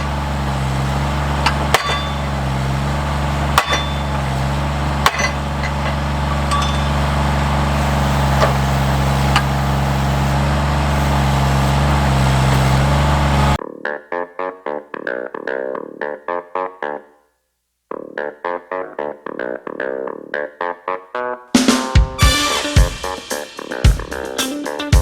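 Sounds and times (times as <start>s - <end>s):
sharp metallic clinks and knocks: 0.0s - 9.6s
engine running steadily: 0.0s - 13.6s
music: 13.6s - 25.0s.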